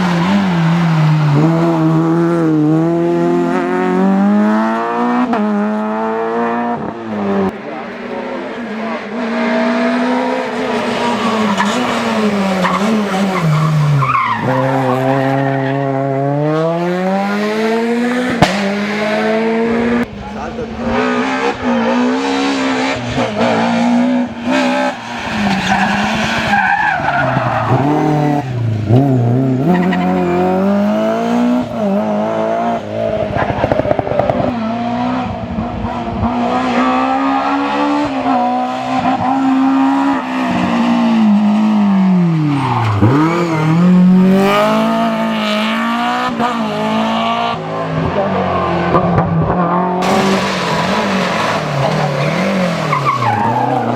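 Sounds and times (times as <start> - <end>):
rally car engine revving: 0.0 - 53.9
tyres squealing: 50.0 - 53.9.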